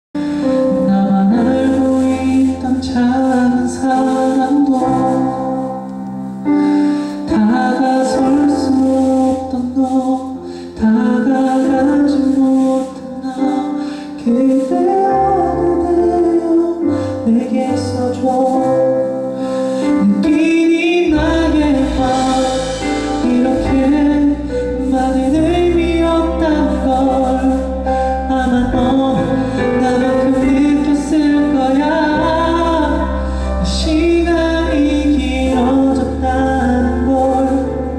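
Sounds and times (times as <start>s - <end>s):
man singing a ballad: 0.2s - 37.9s
band accompaniment: 19.4s - 37.9s
deep bass: 20.0s - 37.9s.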